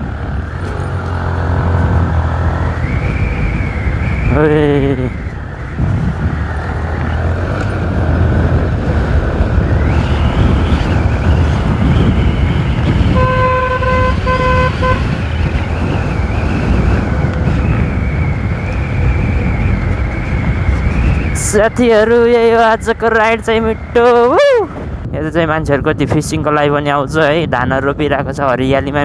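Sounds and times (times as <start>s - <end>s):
motorcycle engine running: 0.0s - 21.4s
road noise: 0.0s - 29.0s
horn honks: 12.9s - 15.6s.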